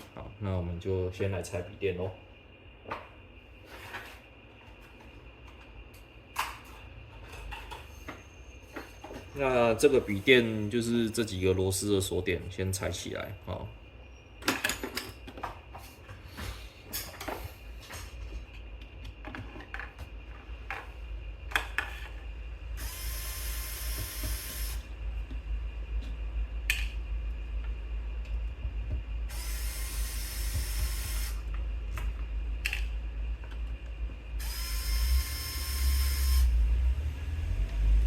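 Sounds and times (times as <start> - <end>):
low hum: 1.6 - 38.0
electric screwdriver whirring: 22.8 - 24.8, 29.3 - 31.4, 34.4 - 36.5.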